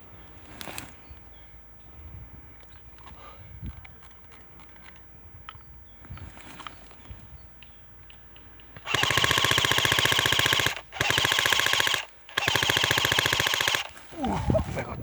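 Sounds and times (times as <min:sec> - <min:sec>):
airsoft gun firing bursts: 0:08.8 - 0:14.2.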